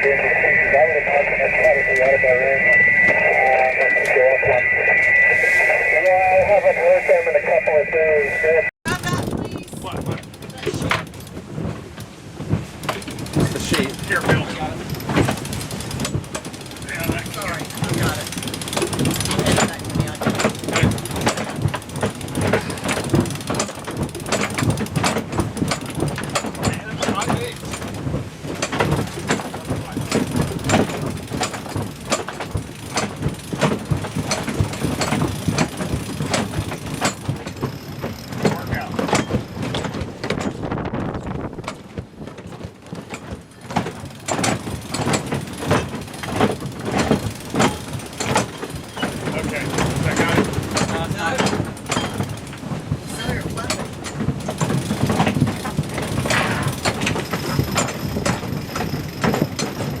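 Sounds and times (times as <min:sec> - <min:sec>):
steady low rumble: 0:00.0 - 0:10.0
rigging clicking and knocking: 0:08.9 - 1:00.0.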